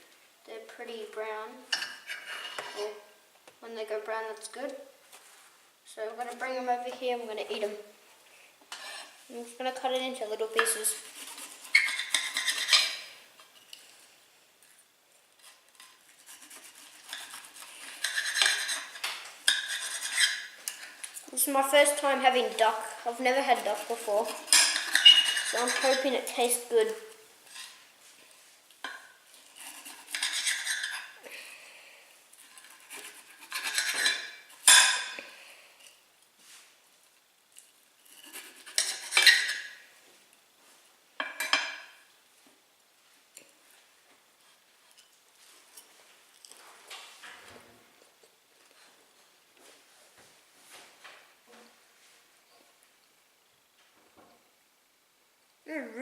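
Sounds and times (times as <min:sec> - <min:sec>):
knife scraping on a plate: 0:01.7 - 0:02.8, 0:08.7 - 0:09.2, 0:10.6 - 0:13.2, 0:15.4 - 0:20.8, 0:23.6 - 0:26.2, 0:28.9 - 0:31.2, 0:32.4 - 0:35.1, 0:38.0 - 0:39.8.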